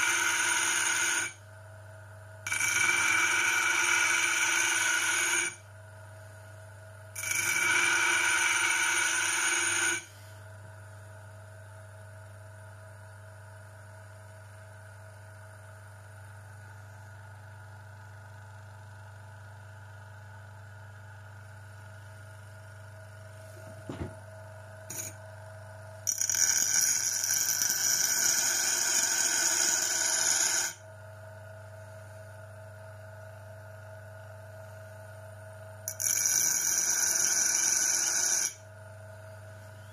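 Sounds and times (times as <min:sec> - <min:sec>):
bench grinder motor hum: 0:02.5 - 0:05.6, 0:07.2 - 0:10.1, 0:26.1 - 0:30.8.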